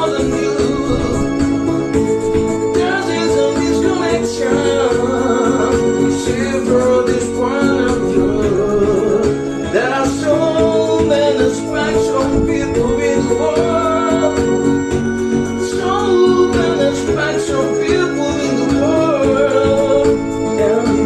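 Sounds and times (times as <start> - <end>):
woman singing: 0.0 - 1.8
electronic keyboard accompaniment: 0.0 - 21.0.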